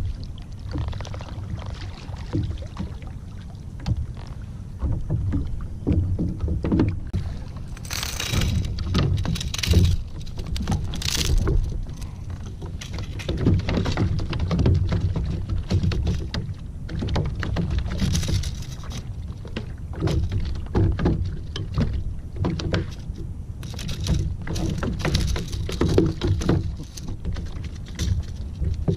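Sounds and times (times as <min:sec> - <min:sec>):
water splashing against boat hull: 0:00.0 - 0:28.9
wind rumbling on microphone: 0:00.0 - 0:28.9
knocks and thumps: 0:04.8 - 0:18.5, 0:23.8 - 0:28.9.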